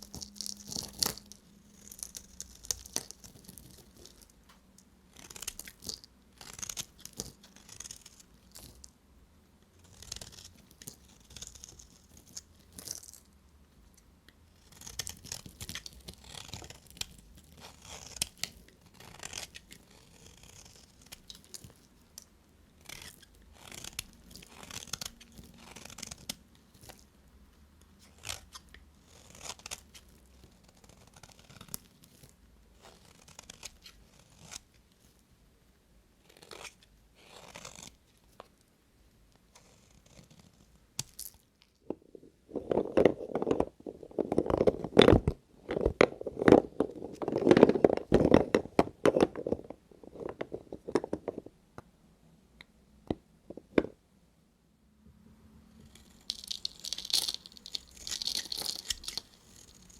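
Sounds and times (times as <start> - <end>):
knife cutting dry soap: 9.8 - 13.1, 14.6 - 27.0, 27.9 - 32.2, 55.9 - 59.9.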